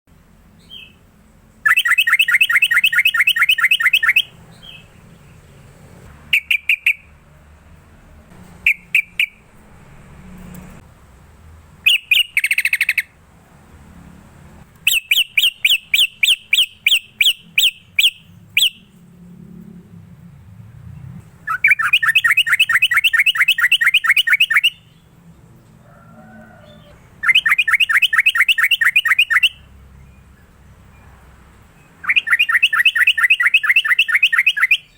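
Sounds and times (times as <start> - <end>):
bulbul chattering song: 0.5 - 7.3, 8.6 - 9.6, 11.8 - 13.2, 14.7 - 19.1, 21.2 - 25.2, 26.7 - 34.9
short bird calls: 32.0 - 34.9.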